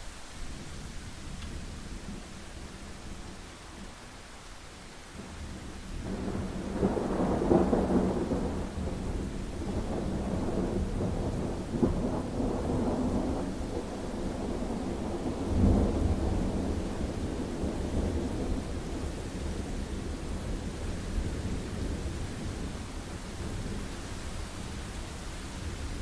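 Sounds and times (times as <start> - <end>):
steady rain: 0.0 - 26.0
thunder rolling: 6.0 - 22.8.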